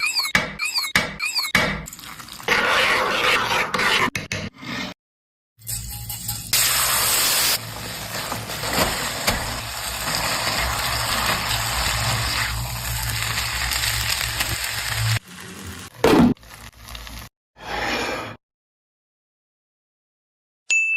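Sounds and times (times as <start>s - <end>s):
food sizzling in a pan: 6.0s - 17.3s.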